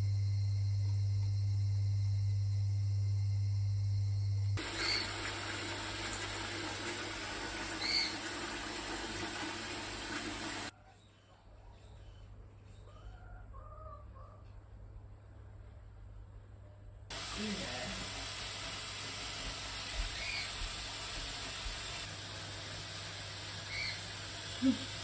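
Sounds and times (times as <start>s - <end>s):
low steady hum: 0.0s - 4.7s
water rushing: 4.6s - 10.7s
soft bird calls: 7.7s - 8.4s.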